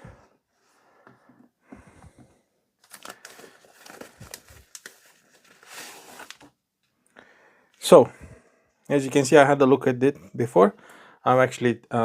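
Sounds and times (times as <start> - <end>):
packaging crinkling: 2.8 - 6.5.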